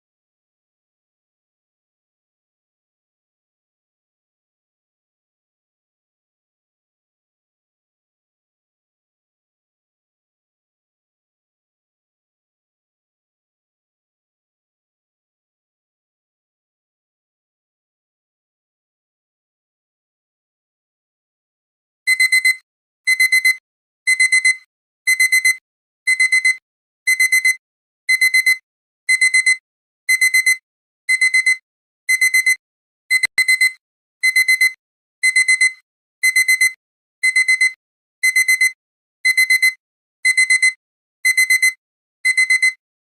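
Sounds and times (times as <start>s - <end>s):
alarm clock beeping: 22.1s - 42.8s.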